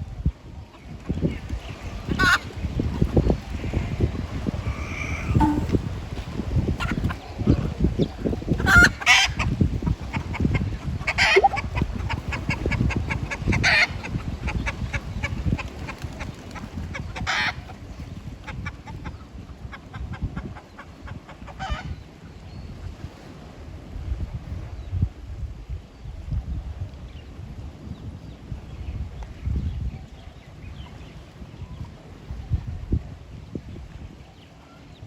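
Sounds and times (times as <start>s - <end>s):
wind rumble on microphone: 0.0s - 35.0s
chicken giving harsh calls: 11.1s - 11.6s.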